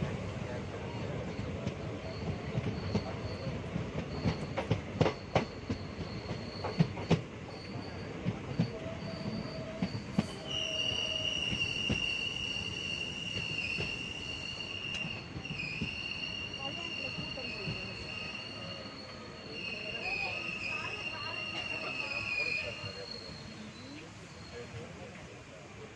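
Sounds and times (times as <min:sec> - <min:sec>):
train wheels clacking over rail joints: 0:01.2 - 0:12.2
high-pitched wheel squeal: 0:07.5 - 0:24.6.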